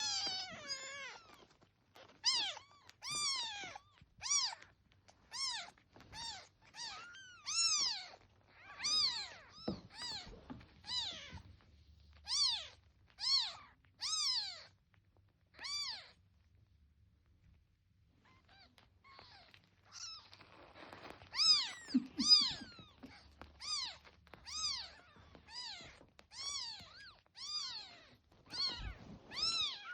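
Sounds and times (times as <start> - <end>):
kitten meowing: 0.0 - 4.7, 5.3 - 11.4, 12.2 - 14.7, 15.5 - 16.2, 21.2 - 29.9.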